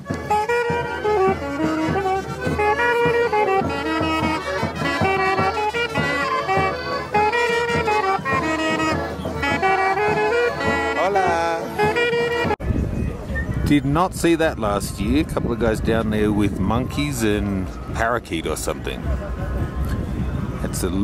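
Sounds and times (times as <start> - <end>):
brass horns playing melody: 0.0 - 12.6
steady drum beat: 0.0 - 12.7.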